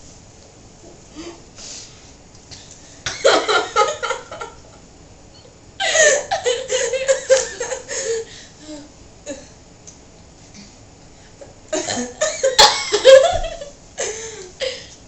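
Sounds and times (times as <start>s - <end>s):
girls laughing: 3.1s - 4.8s, 5.8s - 8.3s, 12.2s - 14.2s.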